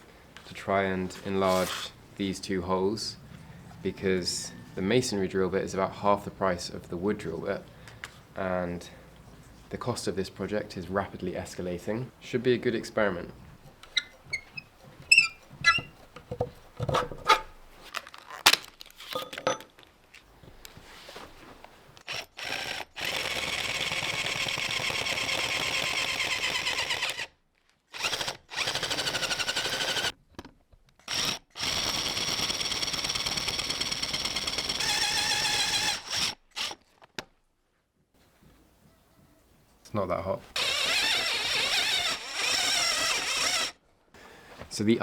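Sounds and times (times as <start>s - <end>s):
electric drill whining: 13.7s - 16.0s, 22.1s - 27.3s, 28.0s - 30.1s, 31.1s - 36.8s, 40.6s - 43.8s.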